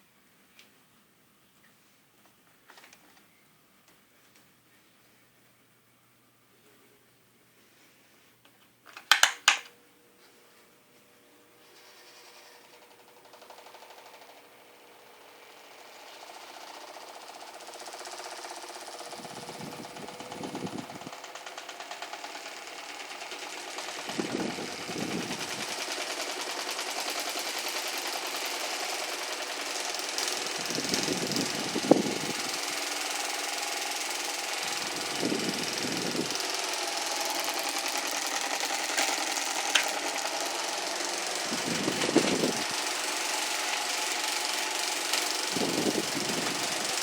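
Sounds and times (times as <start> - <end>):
electric fan vibrating heavily: 11.4 - 47.0.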